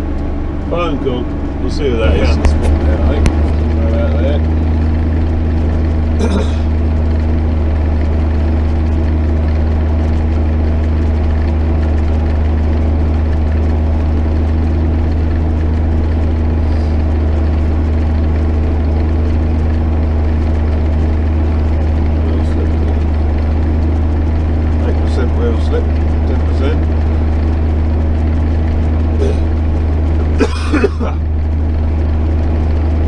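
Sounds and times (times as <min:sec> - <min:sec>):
steady hum: 0:00.0 - 0:33.0
tractor diesel engine droning: 0:00.0 - 0:33.0.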